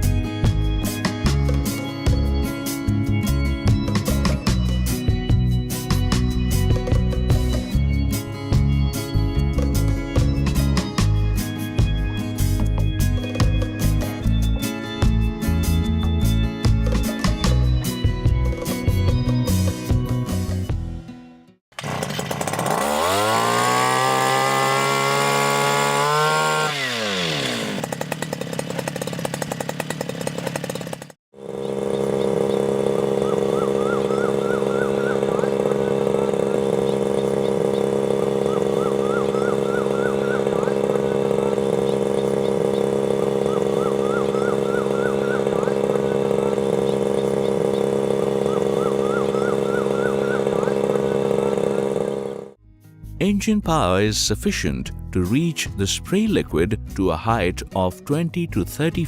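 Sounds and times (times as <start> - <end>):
small engine revving: 21.8 - 52.6
faint rising chirps: 32.1 - 51.8.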